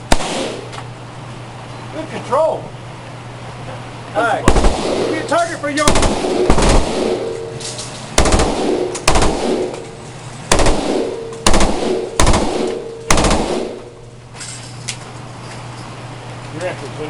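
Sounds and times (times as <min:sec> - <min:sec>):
rifle firing automatic bursts: 0:04.5 - 0:07.4, 0:08.2 - 0:09.8, 0:10.5 - 0:13.8.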